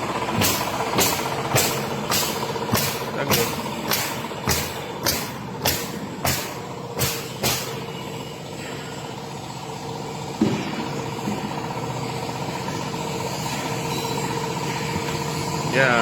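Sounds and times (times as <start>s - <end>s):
engine hum: 0.0s - 16.0s
sharp knocks: 0.3s - 7.8s.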